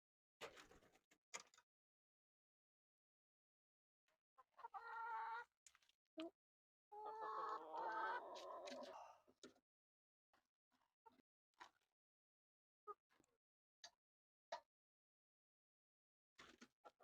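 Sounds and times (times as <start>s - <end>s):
hens clucking: 4.5s - 5.5s, 7.0s - 9.0s.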